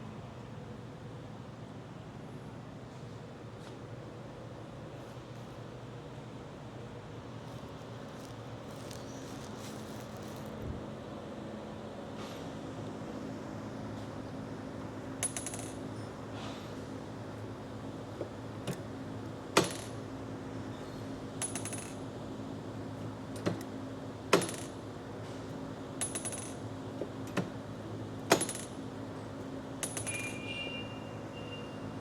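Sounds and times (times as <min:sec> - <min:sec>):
metallic clicks and clinks: 0:21.4 - 0:22.0, 0:26.0 - 0:26.6, 0:29.8 - 0:30.5
faint high whine: 0:30.1 - 0:32.0.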